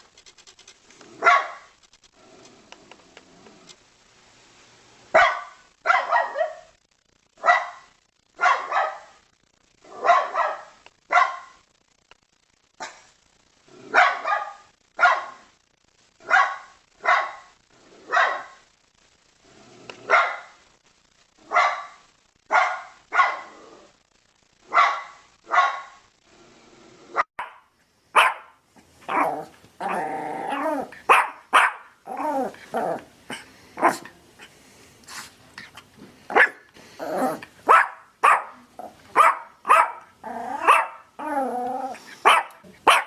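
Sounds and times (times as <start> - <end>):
dog barking: 1.2 - 1.7, 5.2 - 6.7, 7.4 - 9.2, 9.8 - 11.6, 13.9 - 15.5, 16.2 - 17.5, 18.1 - 18.6, 20.0 - 20.6, 21.4 - 23.6, 24.7 - 26.0, 27.4 - 29.4, 31.0 - 32.0, 36.3 - 36.7, 37.6 - 41.1, 42.2 - 43.0.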